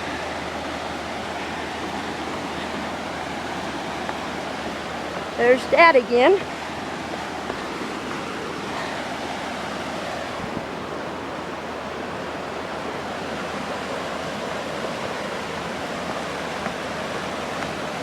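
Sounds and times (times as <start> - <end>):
river rushing: 0.0 - 18.0.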